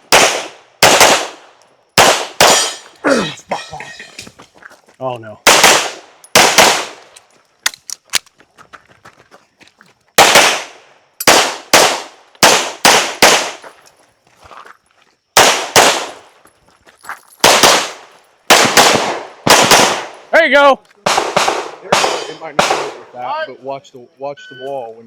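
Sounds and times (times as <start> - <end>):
pistol shots with echo: 0.0 - 2.8, 5.4 - 7.0, 10.2 - 13.6, 15.4 - 16.2, 17.4 - 20.3, 21.0 - 23.1.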